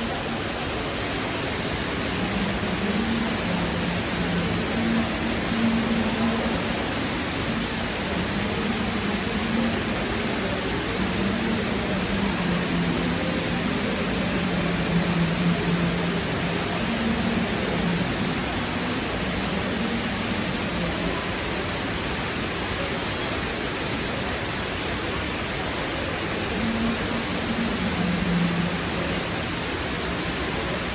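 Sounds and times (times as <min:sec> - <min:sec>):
indoor waterfall rushing: 0:00.0 - 0:30.9.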